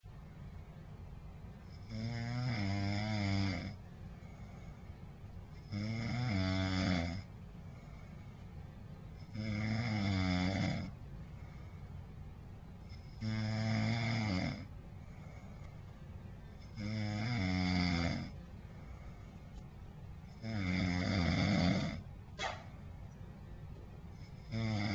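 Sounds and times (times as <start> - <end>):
person snoring: 1.7 - 3.8, 5.6 - 7.3, 9.2 - 10.9, 12.9 - 14.7, 16.7 - 18.3, 20.4 - 22.0, 24.2 - 24.9.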